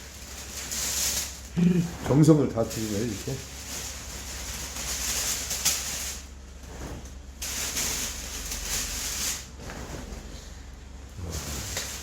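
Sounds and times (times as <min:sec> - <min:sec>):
low steady hum: 0:00.0 - 0:12.0
even hiss: 0:11.2 - 0:12.0.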